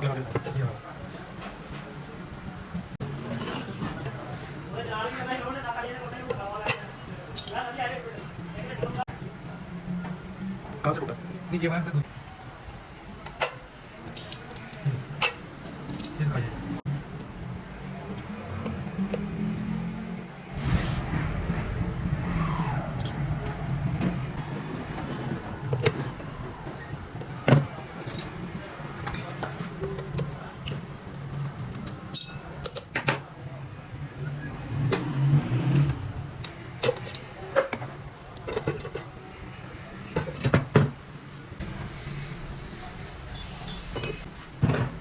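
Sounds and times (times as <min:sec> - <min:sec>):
metal parts clicking and knocking: 0:13.2 - 0:16.3, 0:23.0 - 0:23.2, 0:26.9 - 0:28.4, 0:29.0 - 0:33.3.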